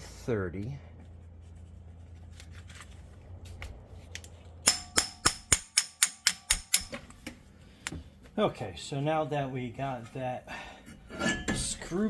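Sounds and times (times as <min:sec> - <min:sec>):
hammer striking impact driver: 0:04.6 - 0:07.3.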